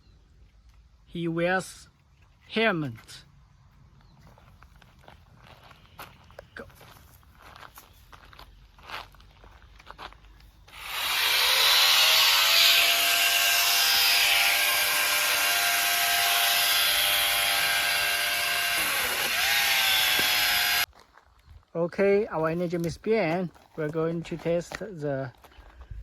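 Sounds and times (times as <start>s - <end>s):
multi-tool motor whining: 10.7s - 20.9s.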